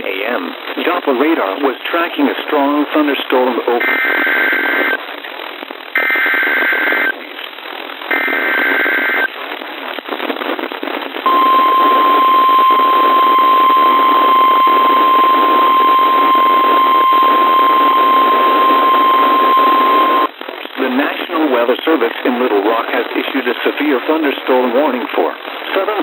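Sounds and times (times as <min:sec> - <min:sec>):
radio hiss: 0:00.0 - 0:26.0
steady warning alarm tone: 0:11.3 - 0:20.3
warbling digital header tones: 0:11.3 - 0:20.3.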